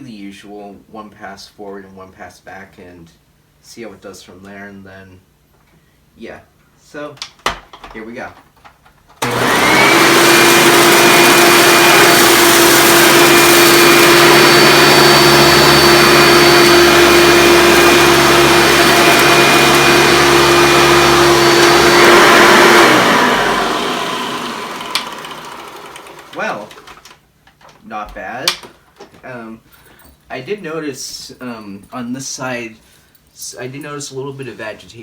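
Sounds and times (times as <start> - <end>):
vacuum cleaner motor whining: 9.2 - 27.2.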